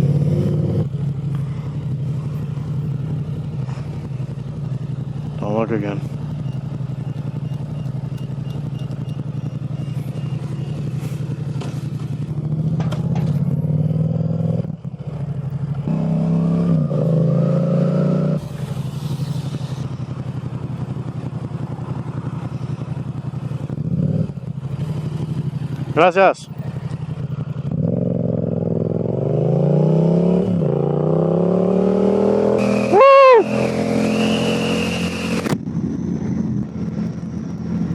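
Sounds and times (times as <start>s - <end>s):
motorcycle engine revving: 0.0s - 37.9s.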